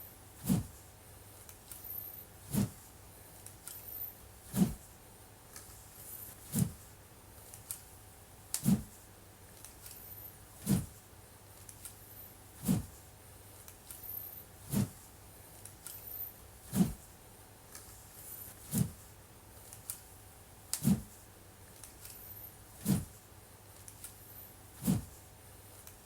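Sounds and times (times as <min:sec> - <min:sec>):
wooden sword whooshing: 0:00.4 - 0:00.7, 0:02.4 - 0:02.8, 0:04.5 - 0:04.8, 0:06.5 - 0:06.8, 0:08.6 - 0:08.9, 0:10.6 - 0:10.9, 0:12.6 - 0:12.9, 0:14.7 - 0:15.0, 0:16.7 - 0:17.0, 0:20.8 - 0:21.1, 0:22.8 - 0:23.1, 0:24.8 - 0:25.1.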